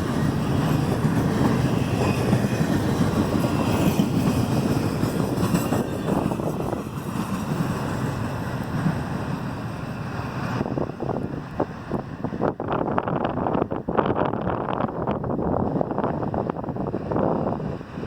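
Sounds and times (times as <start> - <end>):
train wheels rumbling on rails: 0.0 - 18.0.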